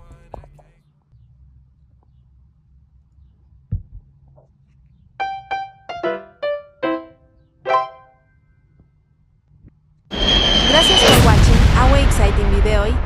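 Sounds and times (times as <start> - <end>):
piano melody: 5.2 - 8.2.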